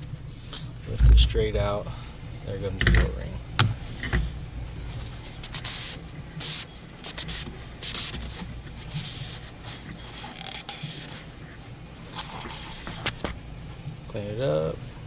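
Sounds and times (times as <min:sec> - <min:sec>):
rag rubbing on metal housing: 0:05.0 - 0:13.2.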